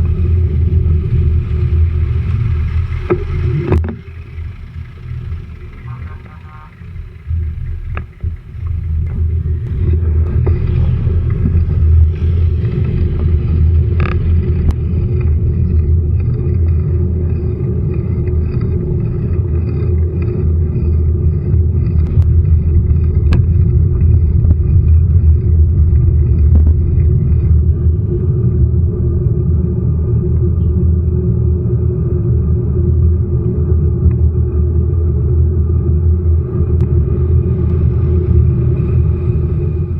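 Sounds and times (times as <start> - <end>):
vehicle engine rumble: 0.0 - 39.9
faint clicks: 2.3 - 10.6.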